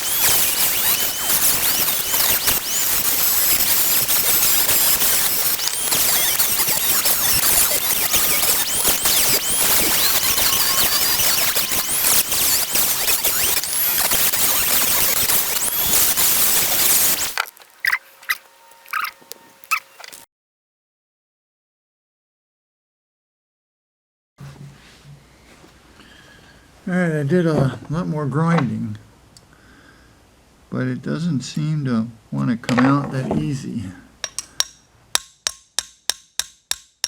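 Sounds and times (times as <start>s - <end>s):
power grinder grinding metal: 0.0s - 20.2s.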